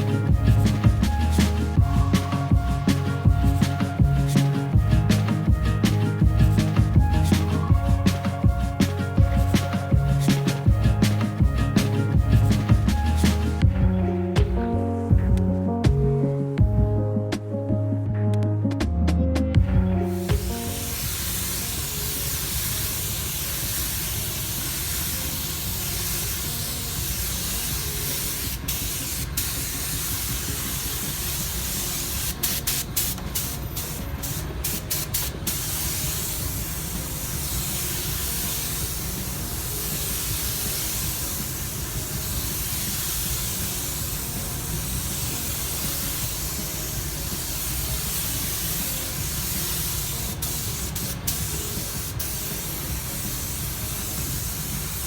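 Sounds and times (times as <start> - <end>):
paint spray gun hissing: 0.0 - 13.6, 20.0 - 55.0.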